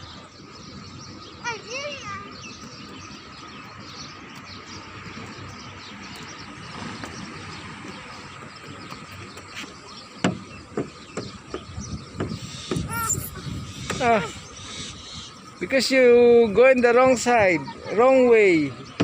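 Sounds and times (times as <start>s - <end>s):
small birds chirping: 0.0s - 19.0s
sharp knocks: 10.2s - 12.9s.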